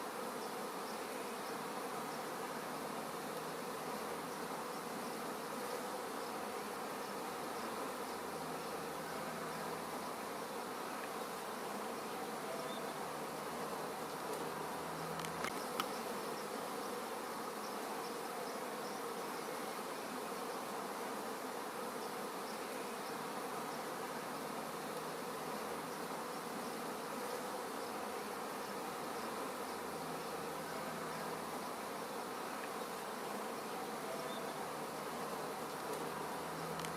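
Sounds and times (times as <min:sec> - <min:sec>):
steady buzzing drone: 0:12.5 - 0:16.0.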